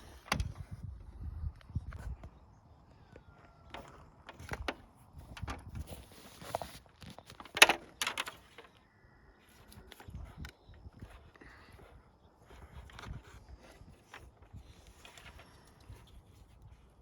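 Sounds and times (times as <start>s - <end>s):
knocks and clicks of handling: 0.2s - 0.6s, 3.2s - 8.8s.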